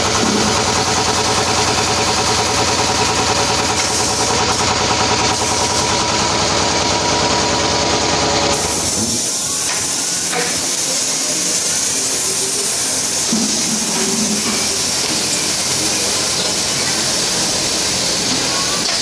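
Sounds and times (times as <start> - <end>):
steady machine hiss: 0.0 - 6.4, 8.5 - 19.0
rhythmic machine clatter: 0.0 - 19.0.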